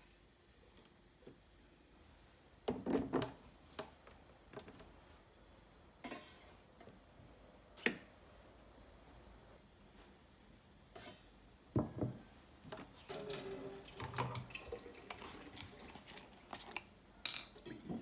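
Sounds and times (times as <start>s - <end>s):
kitchenware clattering: 6.0s - 6.6s
kitchenware scraping: 6.0s - 6.6s, 11.0s - 16.2s.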